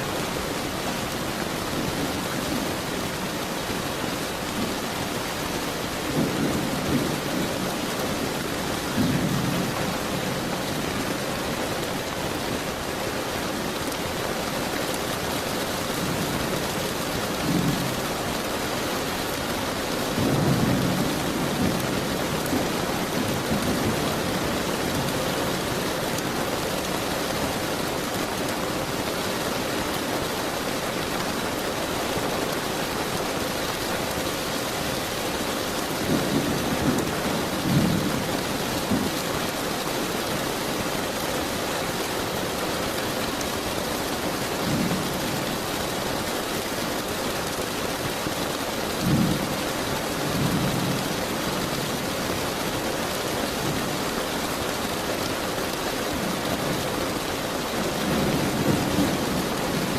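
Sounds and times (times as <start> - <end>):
heavy rain: 0.0 - 59.9
thunder rumbling: 1.9 - 11.7.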